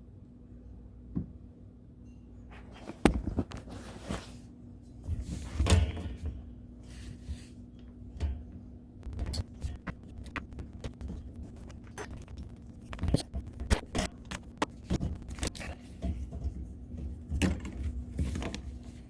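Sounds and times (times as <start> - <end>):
faint steady hum: 0.0 - 19.0
knocks of plumbing parts and tools: 8.1 - 18.8.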